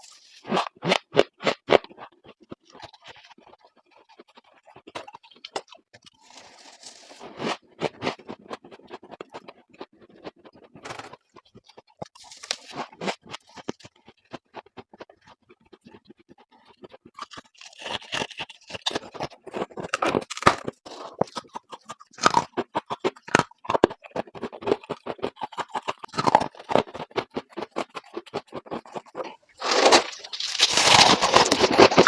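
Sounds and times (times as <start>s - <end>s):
ice being chewed: 0.0s - 32.0s
scraping: 29.2s - 32.0s.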